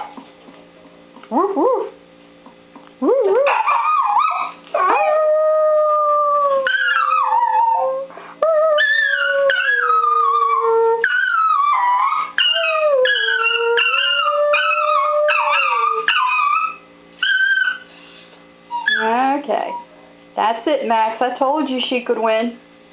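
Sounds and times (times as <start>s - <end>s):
dog howling: 3.0s - 17.9s.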